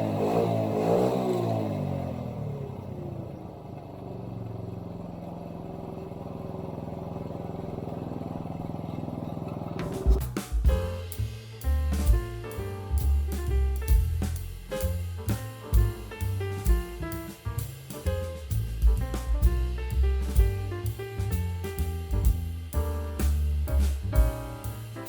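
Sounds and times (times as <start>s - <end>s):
small motorbike engine idling: 1.9s - 10.2s
background music with drums: 9.8s - 25.0s.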